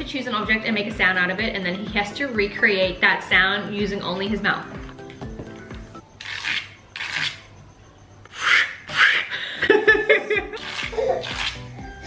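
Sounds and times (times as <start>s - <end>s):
people laughing: 9.4s - 11.3s.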